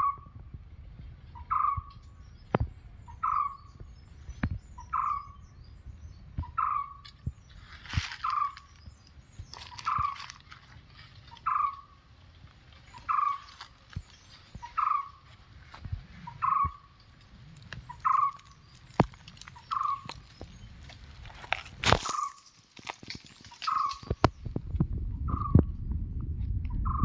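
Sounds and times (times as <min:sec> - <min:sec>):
sharp clicks and rustles: 0:17.0 - 0:24.9.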